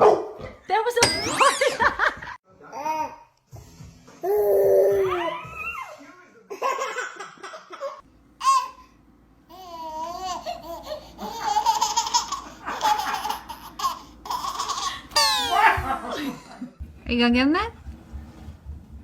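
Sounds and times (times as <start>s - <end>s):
small child laughing: 9.8s - 16.4s.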